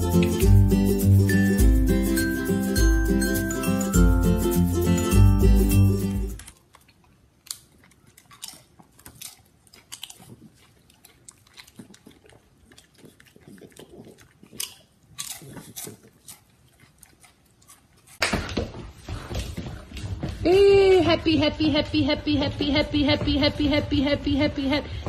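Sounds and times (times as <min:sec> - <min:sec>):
dog chewing with crunches: 0:06.3 - 0:20.2.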